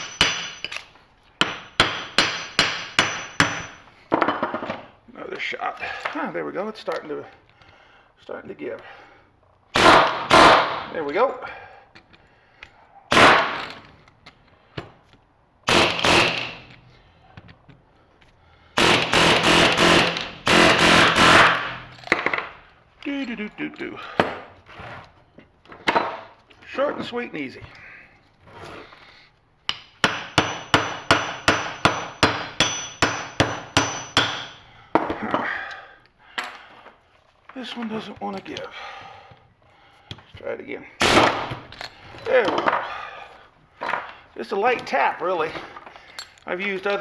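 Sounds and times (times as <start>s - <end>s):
air hammer rattling bursts: 0.0s - 0.7s, 15.6s - 16.7s, 18.8s - 22.0s
air hammer striking steel: 0.0s - 0.8s, 1.4s - 3.8s, 18.8s - 21.9s, 29.7s - 34.6s.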